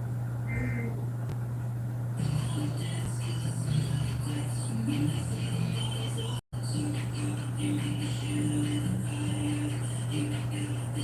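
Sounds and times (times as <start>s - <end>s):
radio receiver low hum: 0.0s - 6.4s.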